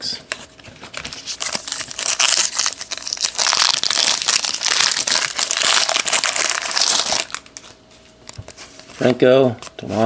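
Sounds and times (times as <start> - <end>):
card pack wrapper crinkling: 1.0 - 7.7.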